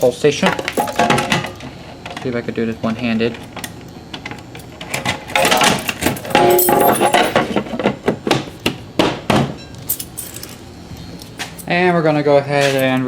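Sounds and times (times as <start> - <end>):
keys clinking: 3.4 - 7.6, 9.6 - 11.7.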